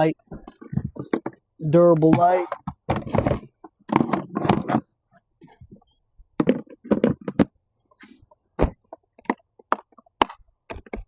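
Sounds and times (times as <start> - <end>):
plastic tool boxes knocking: 0.3 - 4.8, 6.4 - 7.6.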